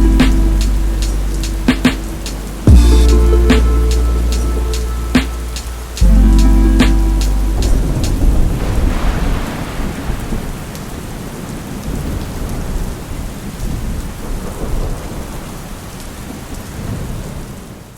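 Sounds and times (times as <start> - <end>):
steady rain: 0.0 - 17.9
rolling thunder rumble: 7.5 - 15.4.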